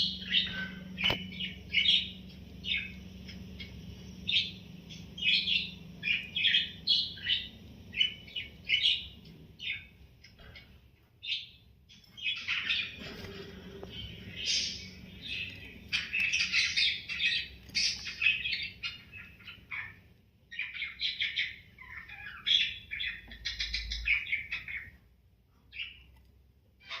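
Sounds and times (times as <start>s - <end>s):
budgie chirping and chattering: 12.2s - 25.0s.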